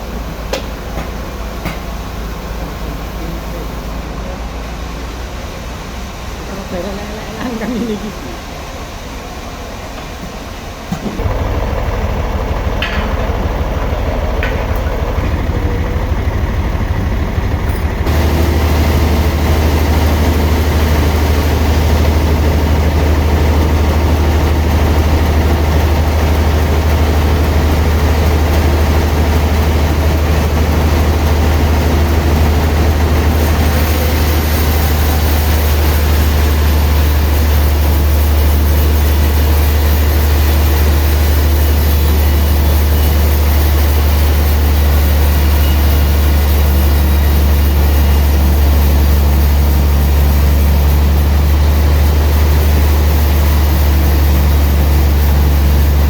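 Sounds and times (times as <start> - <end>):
sawmill machinery running: 0.0 - 56.0.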